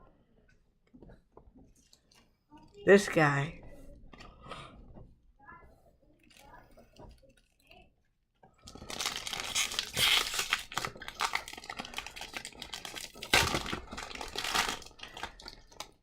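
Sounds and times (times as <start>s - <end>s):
foil wrapper crinkling and tearing: 8.6s - 16.0s.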